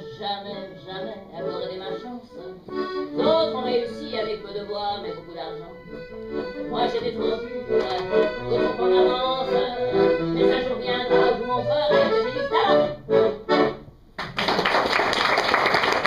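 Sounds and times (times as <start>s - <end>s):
accordion music: 0.0s - 14.1s
applause: 14.2s - 16.0s.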